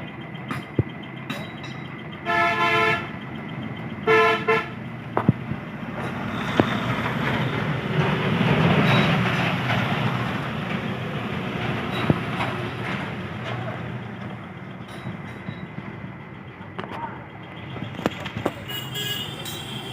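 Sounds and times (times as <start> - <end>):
passing road traffic rumble: 0.0 - 19.9
vehicle horn tooting: 2.2 - 3.1, 4.0 - 4.8, 18.6 - 19.9.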